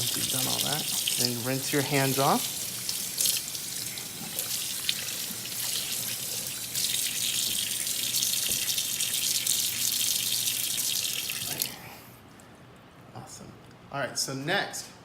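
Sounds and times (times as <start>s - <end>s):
tap water splashing on hands: 6.8s - 8.8s.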